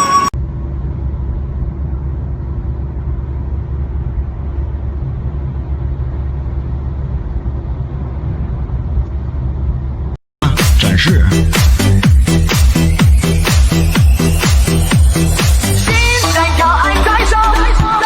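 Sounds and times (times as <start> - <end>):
harvester engine droning: 10.8 - 18.0.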